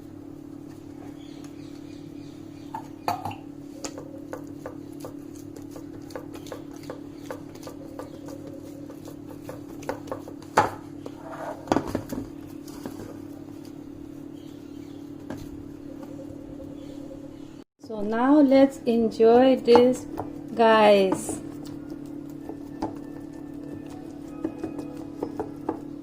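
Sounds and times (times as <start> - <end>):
steady low hum: 0.0 - 26.0
fingers pressing dough: 3.8 - 11.2, 19.3 - 26.0
fingertips tapping on baking tray: 3.9 - 10.8, 21.0 - 26.0.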